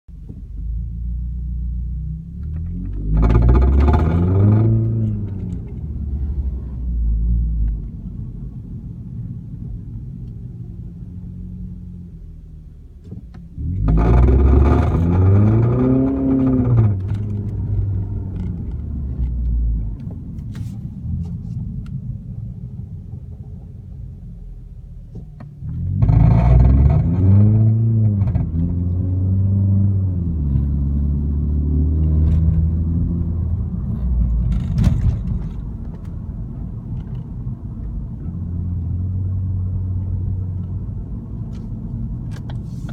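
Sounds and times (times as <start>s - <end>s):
car engine idling and revving: 0.1s - 42.9s.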